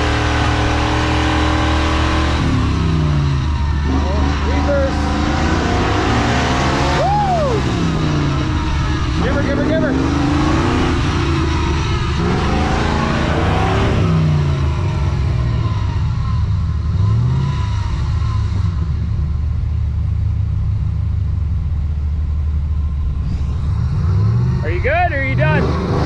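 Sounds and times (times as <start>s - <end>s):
vehicle engine revving: 0.0s - 26.0s.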